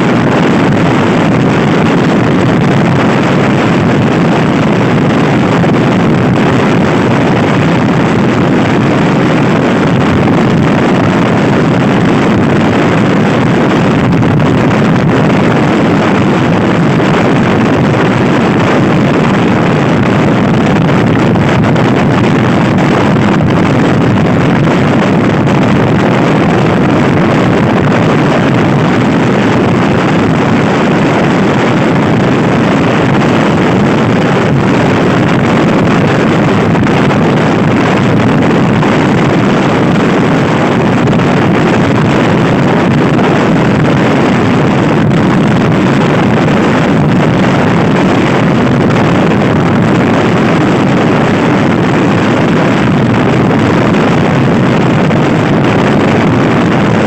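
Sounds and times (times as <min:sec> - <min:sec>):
wind buffeting microphone: 0:00.0 - 0:57.0.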